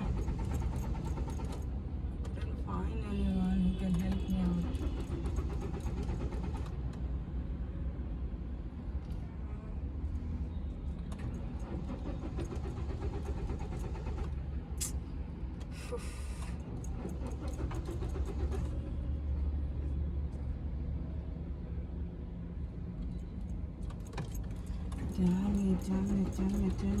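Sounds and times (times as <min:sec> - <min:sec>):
starter cranking engine: 0:00.0 - 0:01.6, 0:04.1 - 0:06.7, 0:11.2 - 0:14.9, 0:16.4 - 0:19.0, 0:23.9 - 0:27.0.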